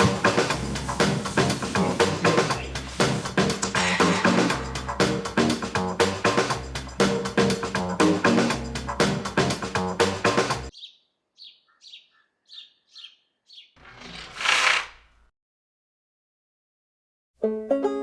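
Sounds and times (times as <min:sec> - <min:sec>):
music with drums and guitar: 0:00.0 - 0:10.7
short bird chirps: 0:10.7 - 0:15.2
whoosh: 0:13.8 - 0:15.2.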